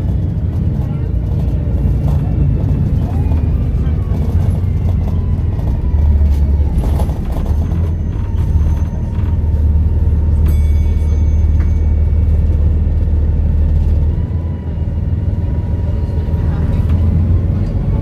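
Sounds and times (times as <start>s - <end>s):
diesel bus engine droning: 0.0s - 18.0s.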